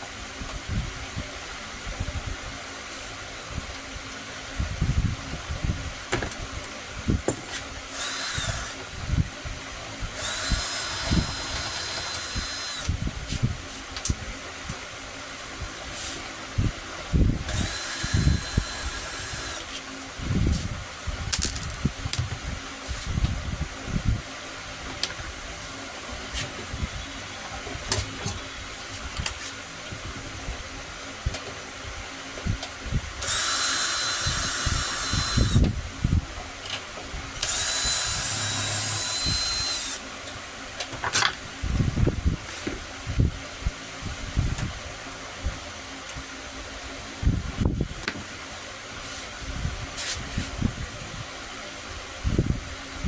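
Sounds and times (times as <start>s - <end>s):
power drill whining: 7.3s - 8.8s, 10.2s - 12.9s, 17.5s - 19.7s, 33.2s - 35.7s, 37.4s - 40.0s.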